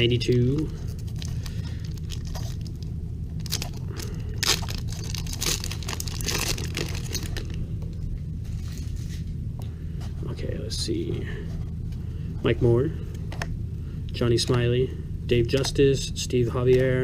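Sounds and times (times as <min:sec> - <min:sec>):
steady low hum: 0:00.0 - 0:17.0
paper wrapper tearing and crinkling: 0:00.9 - 0:07.6.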